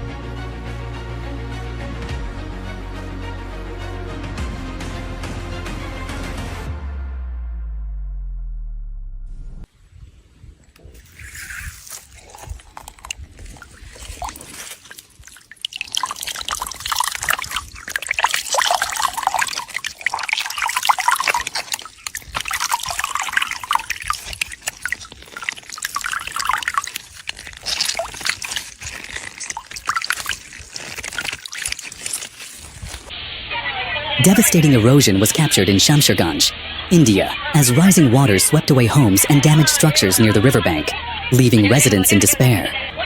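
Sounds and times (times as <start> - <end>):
water splashing and sloshing: 10.8 - 33.1.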